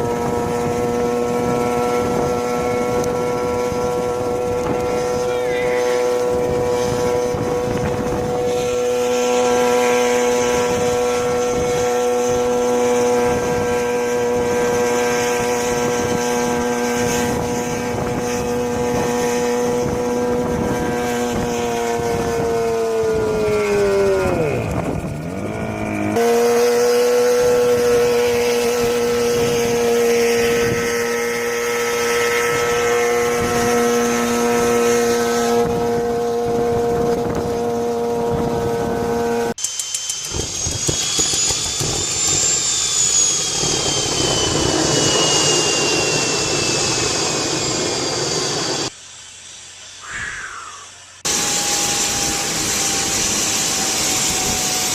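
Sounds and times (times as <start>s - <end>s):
small engine droning: 0.0s - 54.9s.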